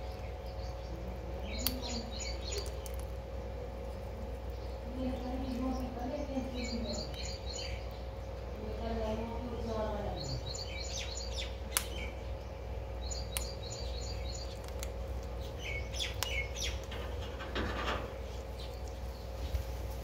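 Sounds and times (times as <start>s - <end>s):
parakeet chirping: 4.5s - 8.5s, 15.4s - 16.9s
sharp clicks: 11.7s - 12.0s, 13.1s - 13.8s.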